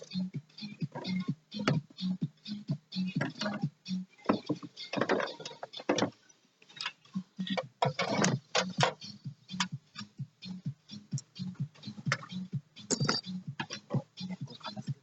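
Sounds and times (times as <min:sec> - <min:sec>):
hand tools clicking and clacking: 0:11.8 - 0:14.0.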